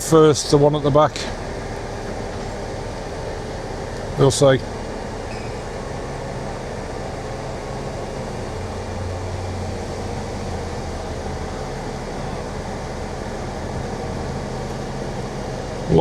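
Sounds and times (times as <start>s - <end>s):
diesel crane engine droning: 0.0s - 16.0s.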